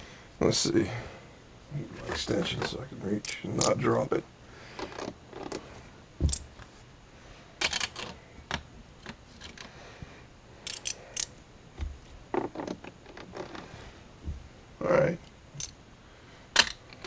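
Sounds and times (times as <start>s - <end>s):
metallic clicks of socket and ratchet: 10.6s - 11.3s.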